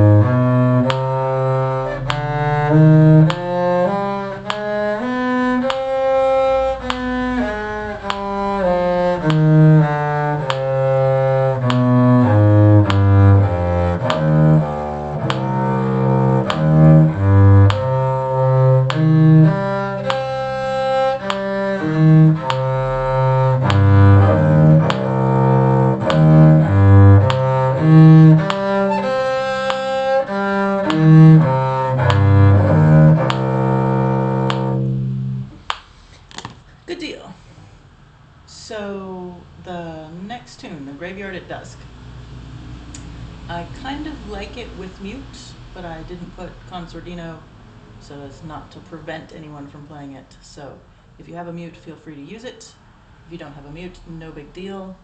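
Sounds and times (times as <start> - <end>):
cello playing bowed notes: 0.0 - 35.8.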